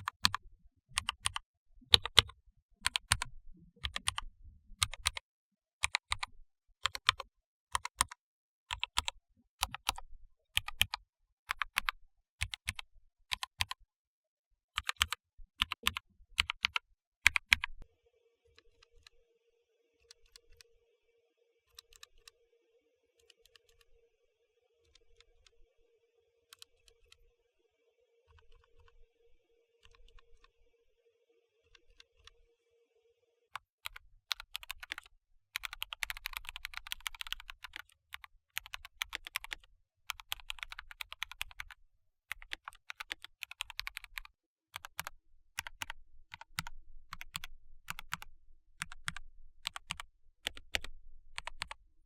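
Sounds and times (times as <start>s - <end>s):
mechanical keyboard clacking: 2.0s - 3.2s.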